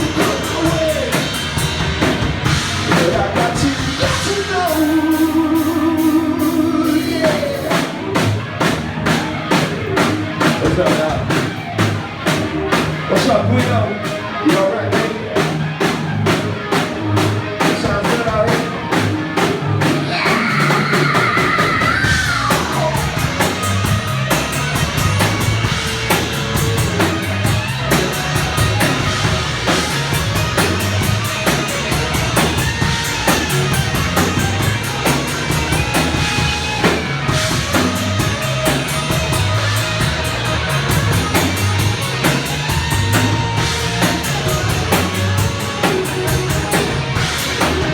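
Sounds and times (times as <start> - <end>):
distorted guitar and bass: 0.0 - 47.9
fast drumming: 0.0 - 47.9.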